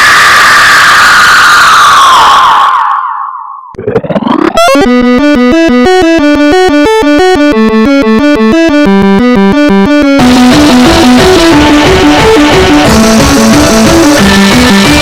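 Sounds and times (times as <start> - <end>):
electronic keyboard music: 4.5 - 15.0.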